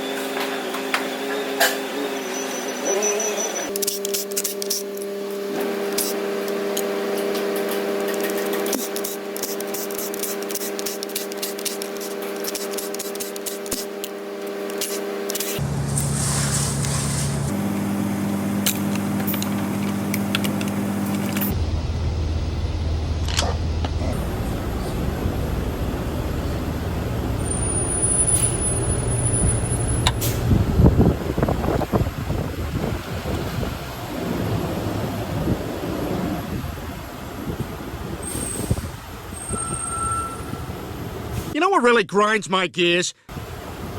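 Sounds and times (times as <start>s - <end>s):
transmission whine: 15.3s - 32.6s
truck drivetrain humming: 15.6s - 41.5s.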